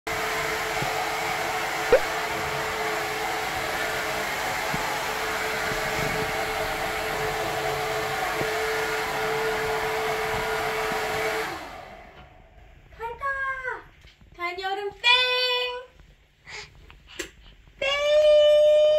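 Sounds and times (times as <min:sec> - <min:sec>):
hair dryer running: 0:00.1 - 0:12.7
brief sharp sound: 0:01.9 - 0:02.1.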